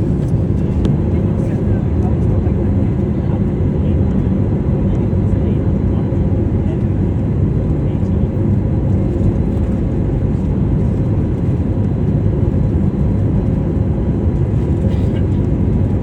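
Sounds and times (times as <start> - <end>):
jet engine rumble in cabin: 0.0 - 16.0.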